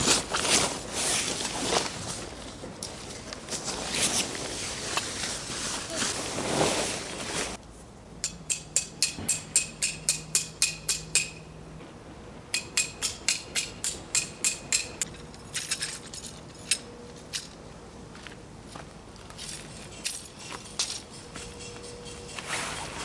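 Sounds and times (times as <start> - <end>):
hammer striking metal tent peg: 8.2 - 11.5, 12.5 - 15.1.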